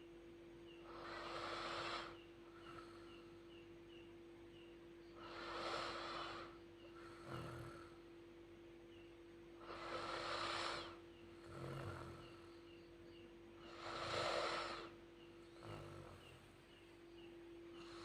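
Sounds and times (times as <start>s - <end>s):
steady low hum: 0.0s - 18.0s
child snoring: 0.8s - 3.0s, 5.2s - 8.0s, 9.6s - 12.5s, 13.7s - 16.4s.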